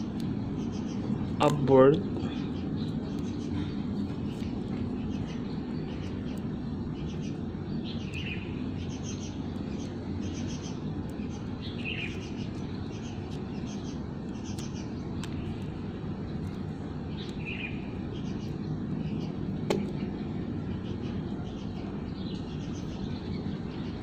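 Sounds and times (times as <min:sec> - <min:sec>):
low background hum: 0:00.0 - 0:24.0
small birds chirping: 0:00.0 - 0:24.0.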